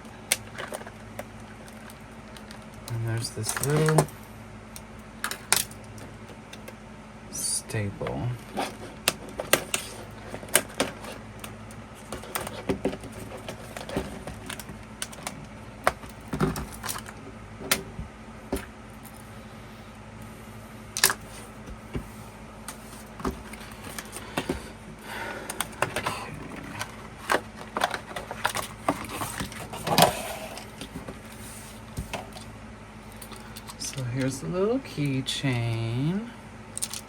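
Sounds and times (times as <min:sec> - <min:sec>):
packaging rustling: 0:00.2 - 0:04.0, 0:08.4 - 0:17.2, 0:25.5 - 0:34.0.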